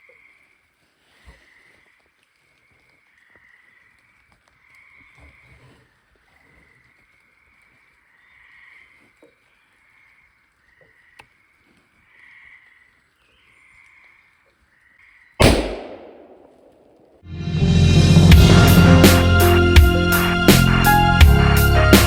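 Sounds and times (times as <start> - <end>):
frogs calling: 0.0 - 0.6, 1.3 - 15.4
rifle shot with echo: 15.4 - 17.2.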